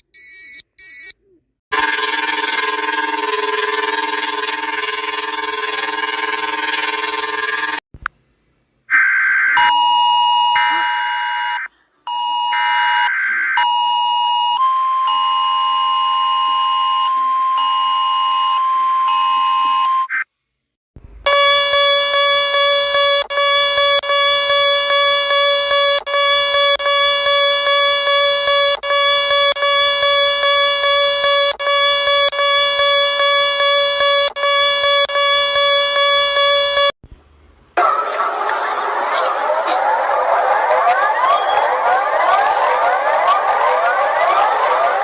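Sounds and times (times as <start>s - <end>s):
lower pulsing alarm tone: 1.7s - 7.8s, 9.7s - 20.1s, 21.3s - 37.0s
high steady beeping tone: 21.3s - 37.0s.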